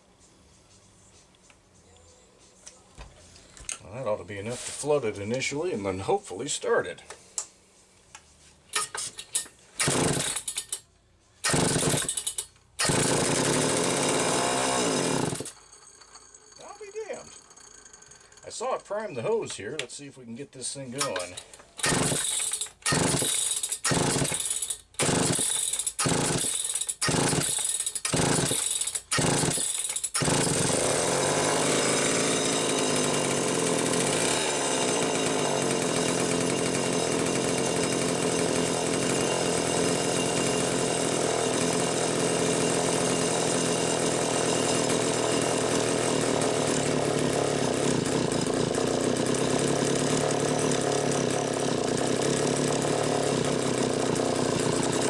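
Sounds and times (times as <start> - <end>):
chainsaw starting and running: 8.7 - 10.8, 11.4 - 18.6, 21.0 - 55.0.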